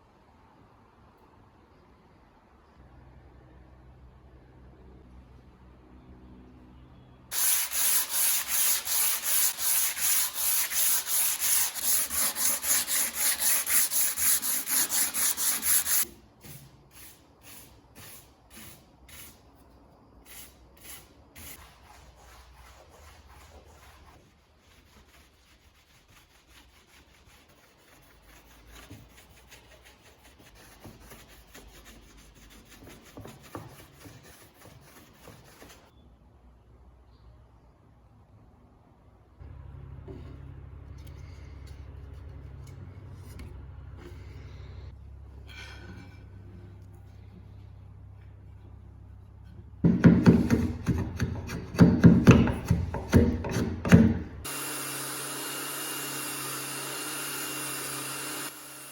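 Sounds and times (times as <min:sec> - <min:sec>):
hand sanding strokes: 0:07.3 - 0:19.4, 0:20.3 - 0:35.9.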